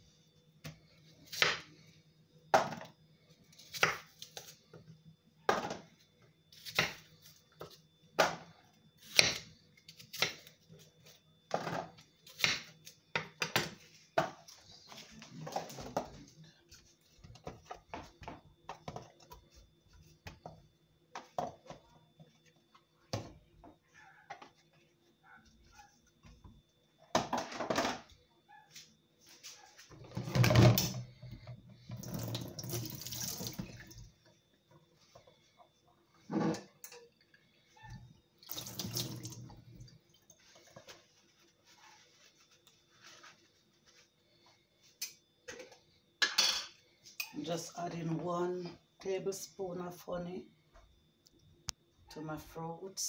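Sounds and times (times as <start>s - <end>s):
tap water running into sink: 31.9s - 34.0s, 38.4s - 39.6s.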